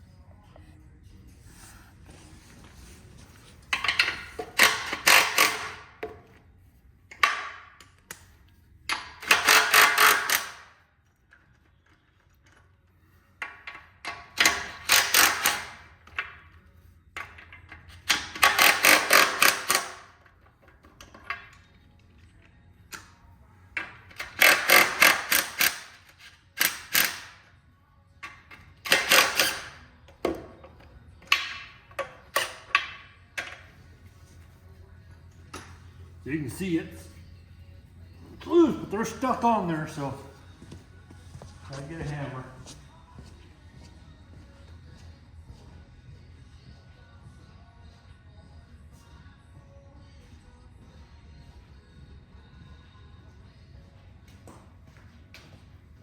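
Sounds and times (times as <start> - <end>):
impact wrench rattling: 3.7 - 6.2, 8.9 - 10.7, 13.4 - 16.4, 17.2 - 20.1, 23.8 - 27.4.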